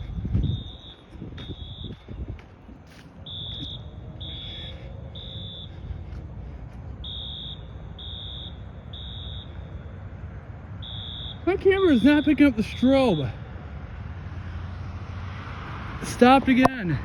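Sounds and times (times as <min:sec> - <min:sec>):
fire alarm horn beeps: 0:00.5 - 0:02.0, 0:03.2 - 0:05.7, 0:07.0 - 0:09.7, 0:10.8 - 0:13.3.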